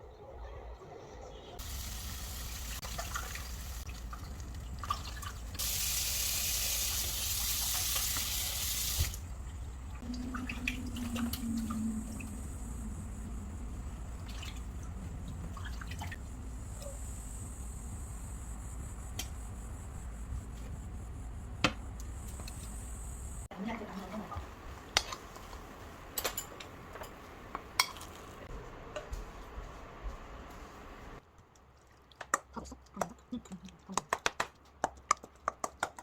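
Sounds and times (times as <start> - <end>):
steady low hum: 9.1 - 24.9.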